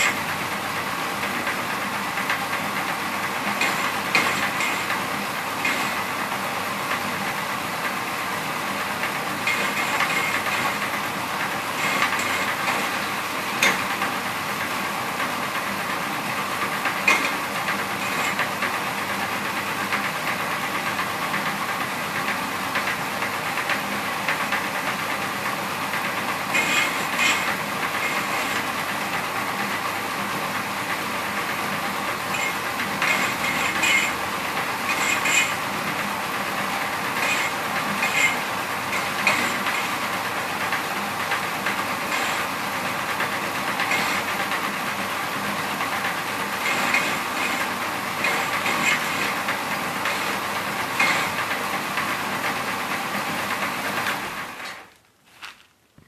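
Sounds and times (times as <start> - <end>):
motorized shaving machine running: 9.4 - 13.8, 26.2 - 29.7, 31.4 - 51.7
short rattling bursts: 25.9 - 29.2, 32.0 - 45.0.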